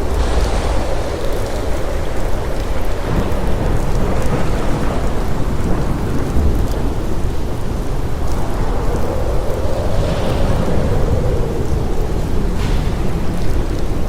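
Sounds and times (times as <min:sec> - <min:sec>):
deep low rumble: 0:00.0 - 0:06.4.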